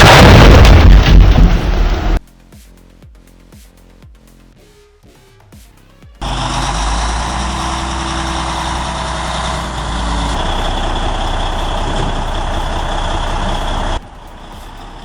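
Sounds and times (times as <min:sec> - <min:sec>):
deep diesel engine rumble: 0:06.2 - 0:15.0.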